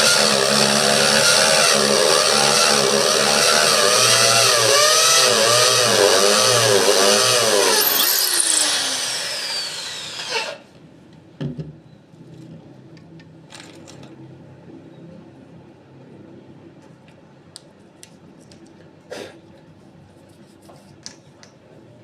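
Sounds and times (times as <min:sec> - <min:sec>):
power tool running: 0:00.0 - 0:10.6.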